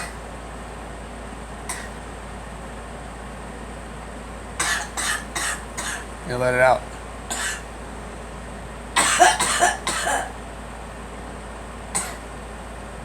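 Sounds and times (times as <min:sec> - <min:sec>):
girl coughing: 0:01.7 - 0:02.0, 0:04.6 - 0:06.1, 0:07.3 - 0:07.7, 0:09.0 - 0:10.4, 0:12.0 - 0:12.3.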